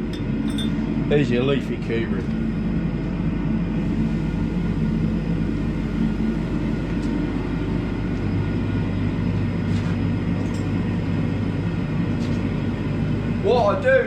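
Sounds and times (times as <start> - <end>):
workshop machinery drone: 0.0 - 14.0.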